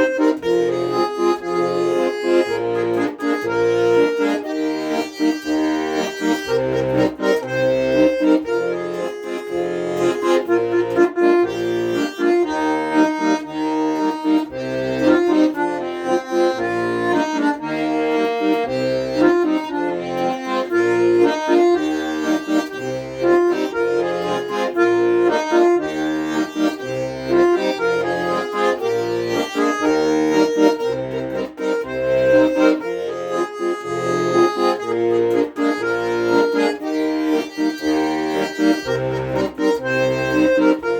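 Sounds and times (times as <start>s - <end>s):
accordion melody: 0.0s - 40.9s
pulsing bass accompaniment: 0.0s - 40.9s.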